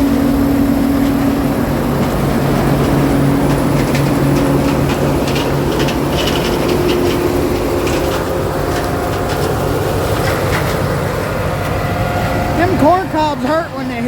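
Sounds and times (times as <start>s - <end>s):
farm machinery engine running: 0.0s - 14.0s
rattle of clicks and crackles: 2.0s - 11.8s.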